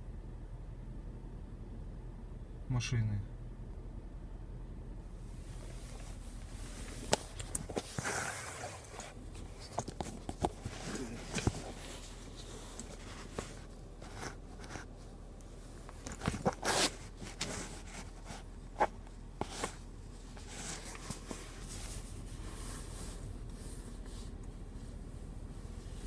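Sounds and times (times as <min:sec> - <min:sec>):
rustling: 0:05.3 - 0:26.0.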